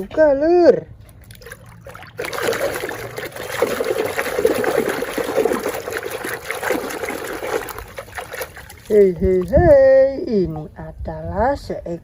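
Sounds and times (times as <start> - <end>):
water splashing over plastic toy: 1.1 - 9.7.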